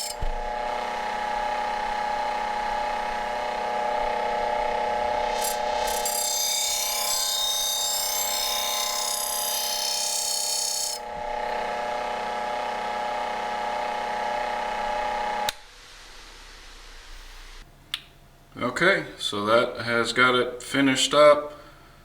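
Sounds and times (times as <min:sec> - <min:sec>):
polishing wheel motor humming: 0:00.0 - 0:15.5.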